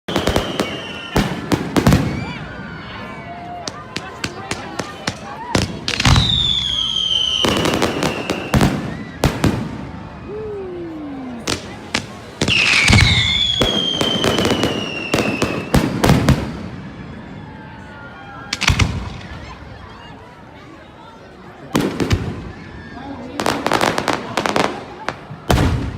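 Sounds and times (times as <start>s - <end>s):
whistling firework shells: 0.1s - 2.4s, 4.6s - 9.8s, 11.5s - 17.2s
fireworks bangs: 0.1s - 2.8s, 3.6s - 10.4s, 11.2s - 17.3s, 18.5s - 19.7s, 21.7s - 25.9s.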